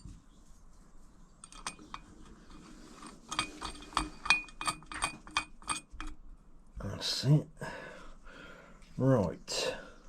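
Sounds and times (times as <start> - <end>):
metal bolts clinking: 1.4 - 6.2.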